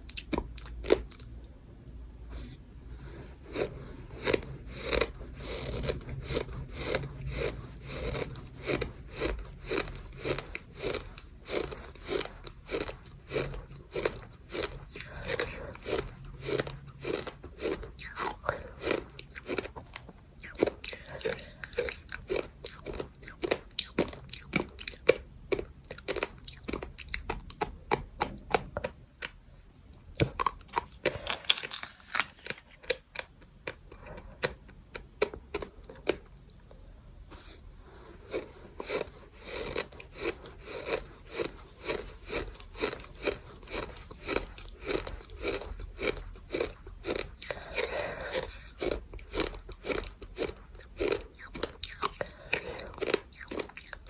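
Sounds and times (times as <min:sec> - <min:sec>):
person chewing gritty sand: 0:00.0 - 0:29.4, 0:30.2 - 0:36.5, 0:37.4 - 0:54.0.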